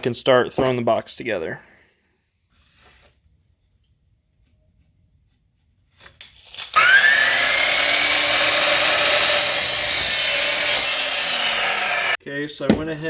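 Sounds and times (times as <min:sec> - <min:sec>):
power saw motor whine: 0:06.6 - 0:12.2.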